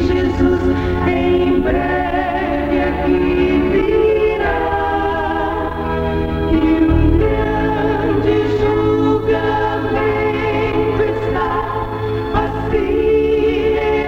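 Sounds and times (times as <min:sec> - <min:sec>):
gospel choir singing: 0:00.0 - 0:14.0
instrumental accompaniment: 0:06.9 - 0:08.9.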